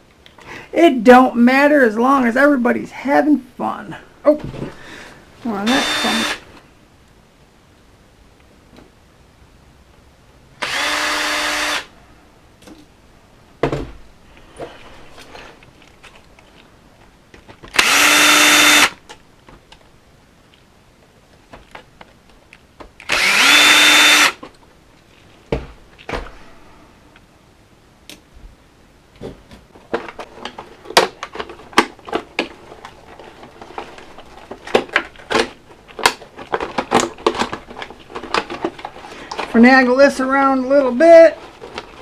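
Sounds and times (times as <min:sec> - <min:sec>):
cordless drill spinning: 0:05.5 - 0:06.5, 0:10.6 - 0:11.9, 0:17.7 - 0:19.0, 0:23.0 - 0:24.4.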